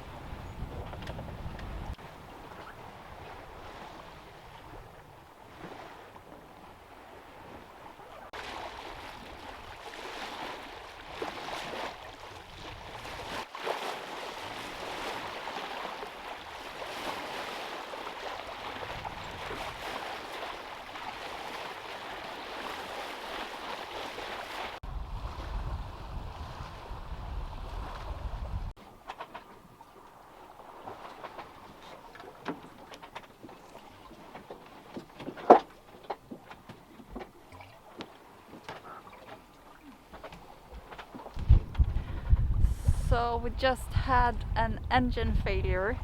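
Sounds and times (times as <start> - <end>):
wind on microphone: 0.0 - 10.0, 11.0 - 13.5, 18.2 - 23.0, 24.8 - 28.8, 40.7 - 46.0
water rushing along boat hull: 0.0 - 46.0.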